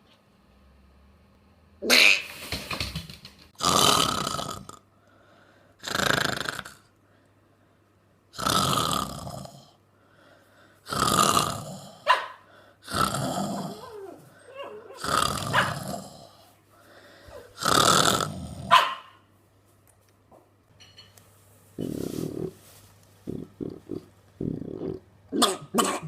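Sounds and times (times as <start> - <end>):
dog making rough vocal noises: 10.9 - 16.4.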